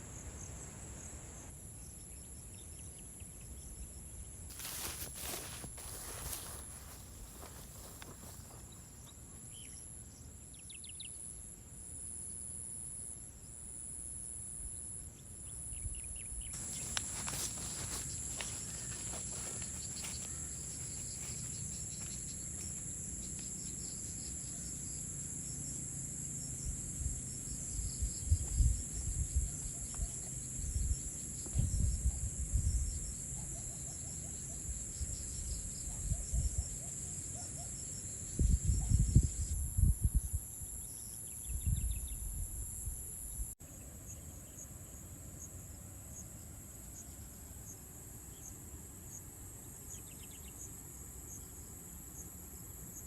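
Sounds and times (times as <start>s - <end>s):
insects shrilling: 4.5s - 9.0s, 16.5s - 24.6s.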